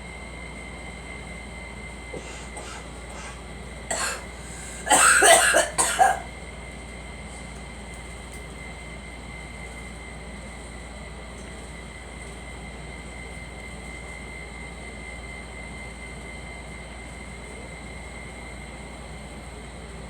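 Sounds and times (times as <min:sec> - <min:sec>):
mechanical rumble and hiss: 0:01.5 - 0:06.3.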